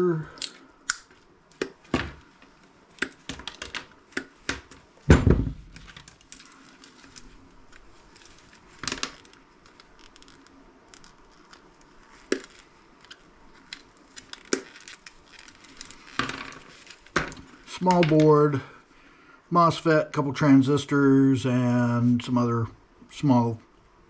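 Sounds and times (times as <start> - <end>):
sharp clicks of small parts: 0.4 - 1.8.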